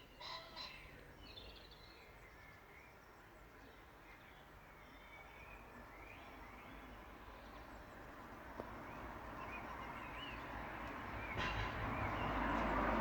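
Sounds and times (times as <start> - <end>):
approaching vehicle: 8.6 - 13.0.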